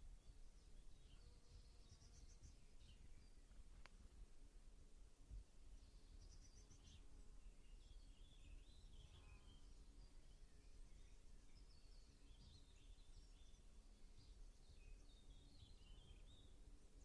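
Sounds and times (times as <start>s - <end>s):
birds chirping and warbling: 0.2s - 3.6s, 5.8s - 17.0s.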